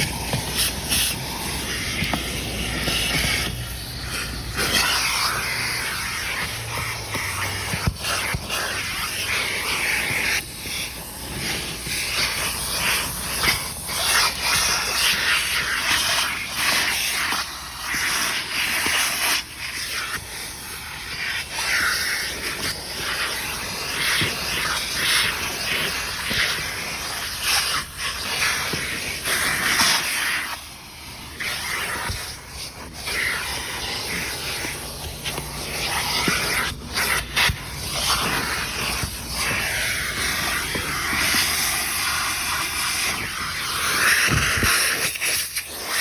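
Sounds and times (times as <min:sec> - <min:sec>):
vacuum cleaner sucking air: 0:00.0 - 0:46.0.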